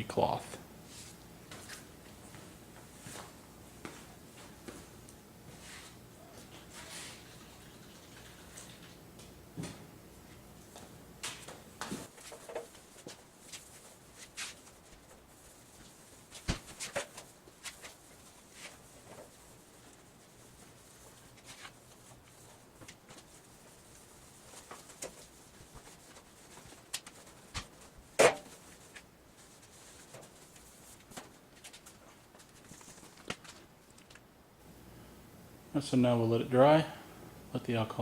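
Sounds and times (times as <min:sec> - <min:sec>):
cloth rubbing plastic: 0:12.0 - 0:33.7.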